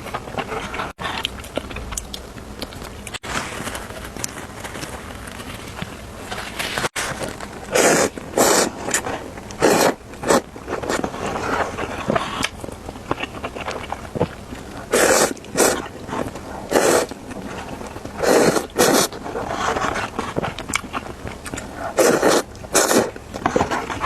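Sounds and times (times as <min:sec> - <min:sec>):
quiet chewing: 0:07.4 - 0:24.0
noodles slurped loudly: 0:14.9 - 0:17.2, 0:21.9 - 0:23.2.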